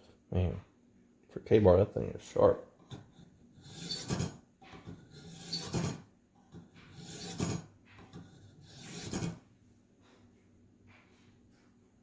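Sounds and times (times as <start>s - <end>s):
blade rasping on sharpener: 2.9s - 6.1s, 6.8s - 9.4s.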